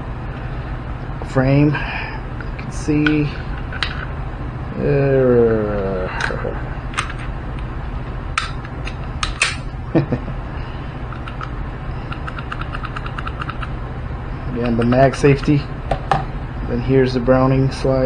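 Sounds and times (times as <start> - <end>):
steady low hum: 0.0 - 18.0
metallic clicks of pistol parts: 8.4 - 9.7.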